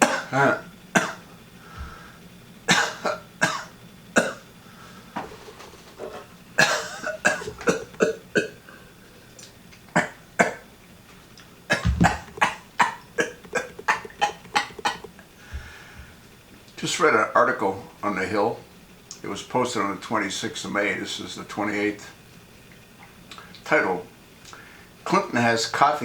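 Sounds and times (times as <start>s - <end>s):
woman coughing: 6.6s - 8.6s.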